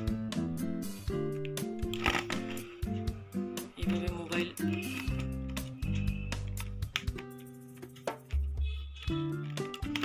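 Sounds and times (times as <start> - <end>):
background music with bass line: 0.0 - 3.8.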